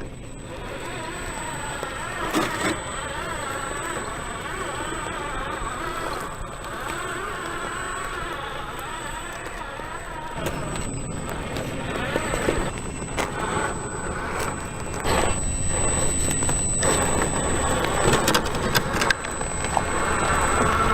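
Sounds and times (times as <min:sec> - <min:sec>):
electric motor whining: 0:00.0 - 0:20.9.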